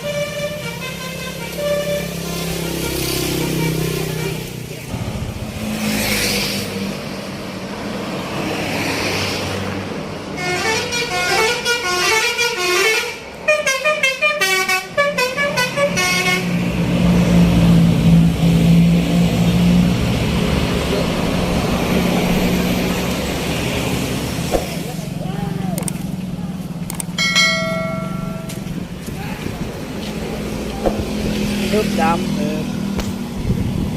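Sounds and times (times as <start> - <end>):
bus musical horn tune: 0.0 - 4.4, 10.4 - 16.6
road noise: 0.0 - 33.9.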